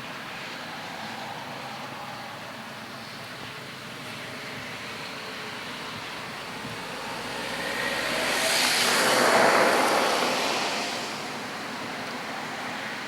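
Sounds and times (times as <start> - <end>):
farm machinery passing: 3.4 - 12.0.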